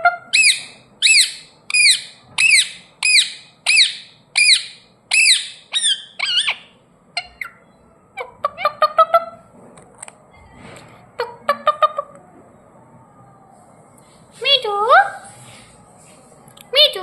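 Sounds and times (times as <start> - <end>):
parrot screeching: 0.0 - 7.6.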